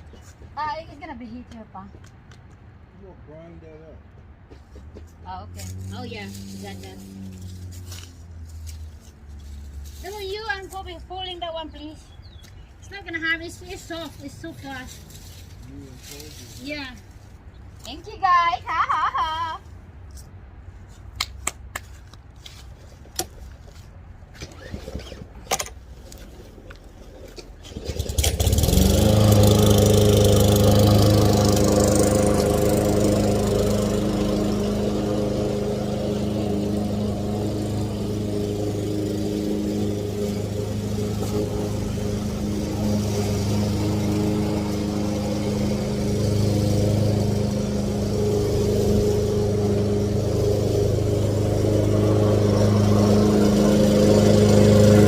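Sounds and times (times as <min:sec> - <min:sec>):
lawn mower engine running: 0:05.3 - 0:10.9, 0:24.5 - 0:55.0.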